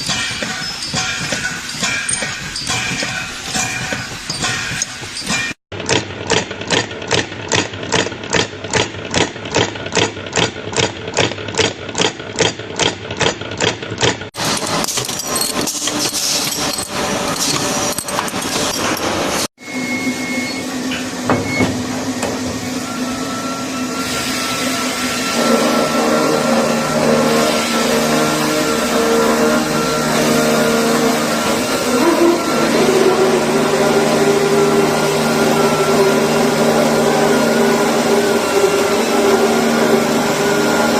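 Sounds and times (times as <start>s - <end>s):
rhythmic metallic striking: 0.0s - 5.6s
dense noisy machine run: 13.4s - 40.9s
machine humming: 14.4s - 40.9s.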